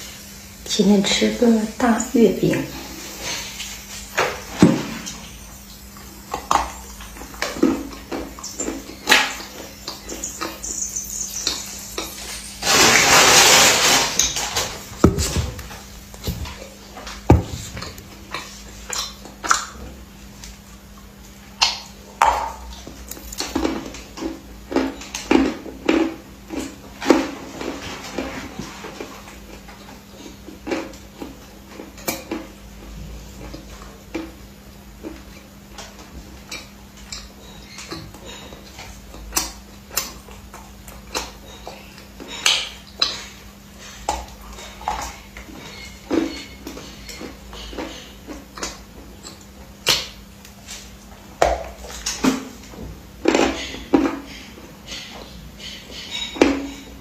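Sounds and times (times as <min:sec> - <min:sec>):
close chewing crunches and smacks: 0:06.0 - 0:55.3
dishes and cutlery clinking: 0:35.1 - 0:57.0.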